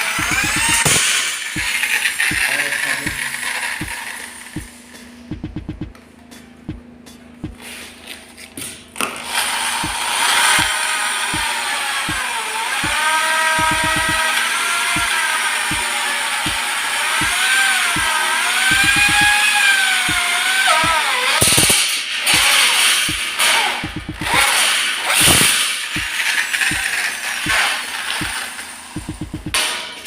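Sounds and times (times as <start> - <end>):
drill ratcheting clicks: 0.0 - 4.6, 12.2 - 14.3, 14.9 - 21.0
cordless drill motor whine: 0.0 - 4.7, 9.2 - 21.7.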